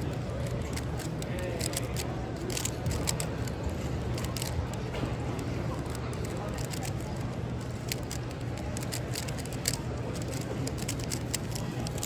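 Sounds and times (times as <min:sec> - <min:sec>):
hum of a big hall: 0:00.0 - 0:12.0
puzzle cube plastic clicks: 0:00.0 - 0:12.0.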